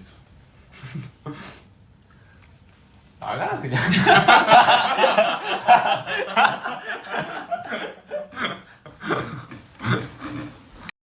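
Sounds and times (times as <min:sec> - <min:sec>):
young men laughing: 0:03.2 - 0:10.6.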